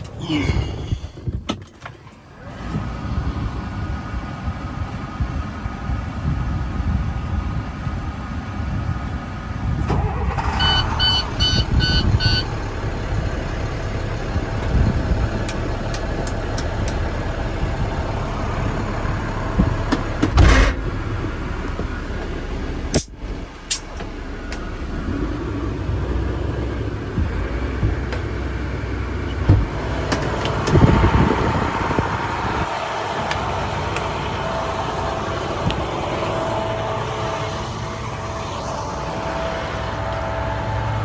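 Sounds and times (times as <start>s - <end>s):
diesel engine idling: 2.2s - 41.0s
short beeps: 10.5s - 12.5s.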